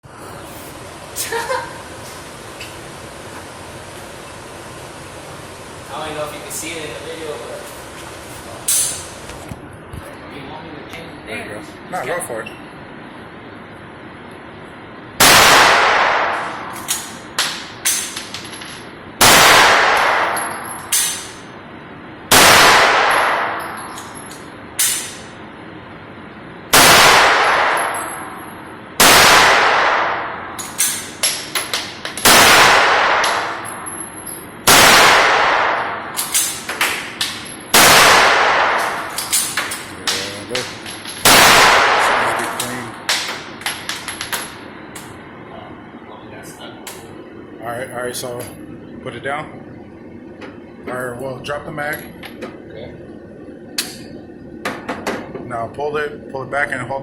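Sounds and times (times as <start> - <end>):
pistol shots with echo: 15.2 - 16.7, 19.2 - 20.4, 22.3 - 23.6, 26.8 - 28.0, 29.0 - 31.1, 32.2 - 33.6, 34.7 - 37.1, 37.8 - 39.1, 40.6 - 43.6.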